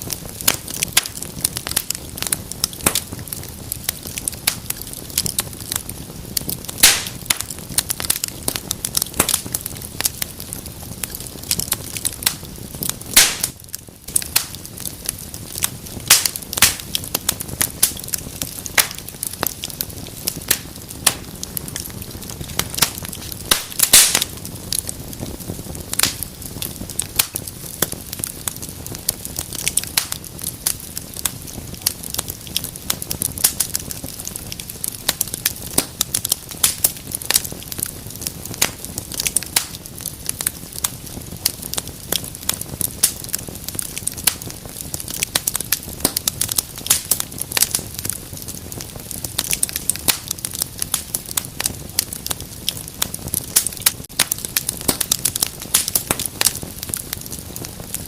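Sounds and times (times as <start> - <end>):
wood fire crackling: 0.0 - 58.0.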